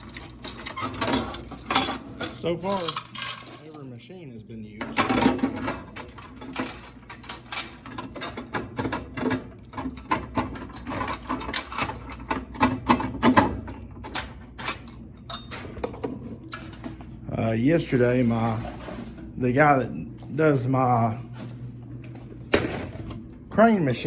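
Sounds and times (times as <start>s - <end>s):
coins clinking and rattling: 0.0s - 3.9s, 5.2s - 8.5s, 9.2s - 12.5s, 17.9s - 19.2s, 21.3s - 23.3s
low steady hum: 0.0s - 8.4s, 13.7s - 24.0s.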